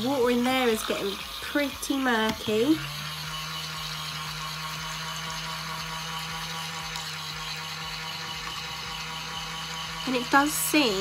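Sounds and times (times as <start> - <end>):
small electric motor humming: 0.0 - 11.0.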